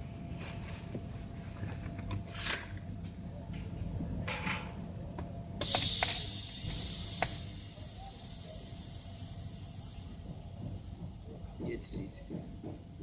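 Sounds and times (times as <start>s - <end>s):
sharp clicks: 5.6s - 7.5s
welding arc hissing: 5.6s - 12.2s.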